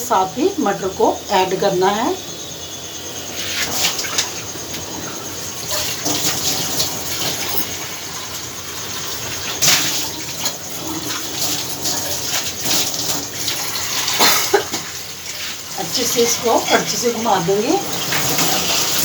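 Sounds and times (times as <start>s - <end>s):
peas sizzling in oil: 5.5s - 19.0s.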